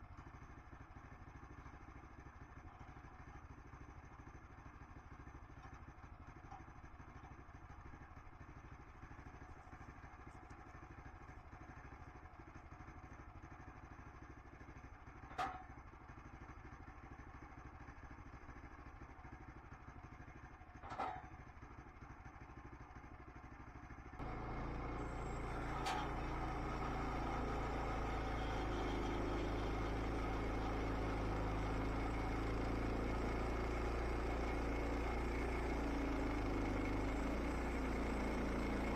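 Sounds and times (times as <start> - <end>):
engine running: 24.2 - 38.9.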